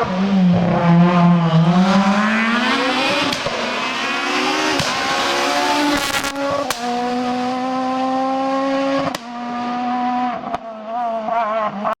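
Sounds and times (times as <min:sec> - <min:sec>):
rally car engine revving: 0:00.0 - 0:12.0
gearshift crack: 0:05.8 - 0:07.0.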